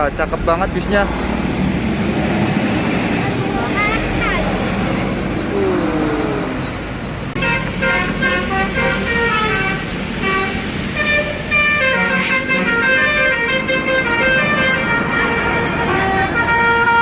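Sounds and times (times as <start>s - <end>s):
musical bus horn tune: 7.4s - 17.0s.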